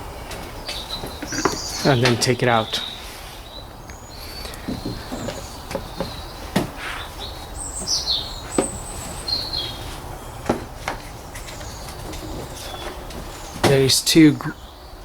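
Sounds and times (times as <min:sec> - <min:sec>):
bird chirping: 0:00.0 - 0:15.0.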